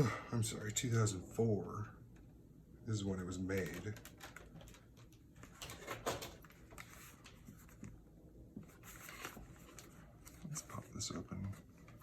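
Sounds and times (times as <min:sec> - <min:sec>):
packaging rustling and clicking: 0:03.5 - 0:08.0.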